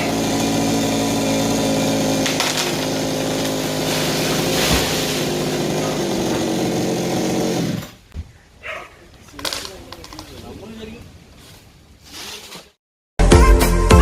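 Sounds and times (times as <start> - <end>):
chainsaw engine running: 0.0 - 8.0.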